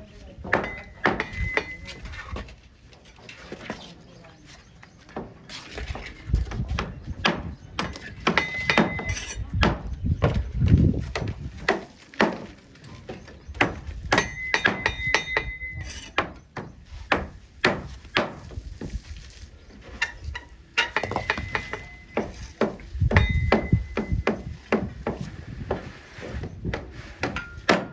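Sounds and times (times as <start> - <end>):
trowel tapping on bricks: 0.5 - 1.9, 6.7 - 10.4, 13.6 - 18.6, 20.8 - 25.9, 26.7 - 27.9.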